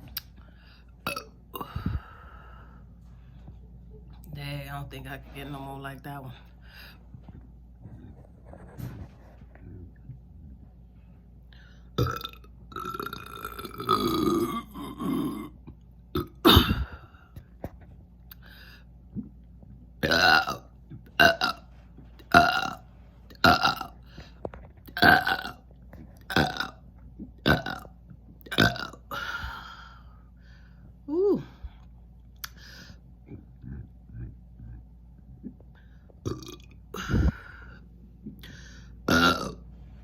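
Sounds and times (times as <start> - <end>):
woman burping: 1.0 - 1.8, 12.0 - 17.1, 23.4 - 24.0, 27.4 - 27.9, 28.5 - 29.4, 36.3 - 37.5, 39.1 - 39.6.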